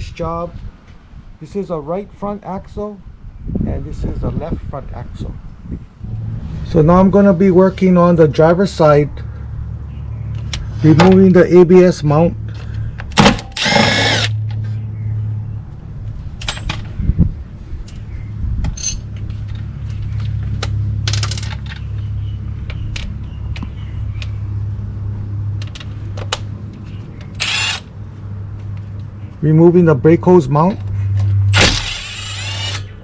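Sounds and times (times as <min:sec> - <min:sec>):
steady low hum: 0:05.7 - 0:08.0
cordless power tool whirring: 0:13.5 - 0:14.4, 0:27.4 - 0:27.9, 0:31.5 - 0:33.0
metal clinks of tools: 0:18.7 - 0:19.1.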